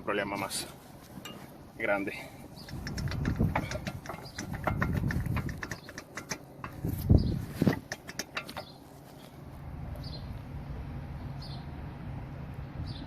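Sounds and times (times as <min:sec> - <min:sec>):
steady low hum: 0:00.0 - 0:13.0
metallic clicks and knocks: 0:01.2 - 0:01.6, 0:02.5 - 0:08.8.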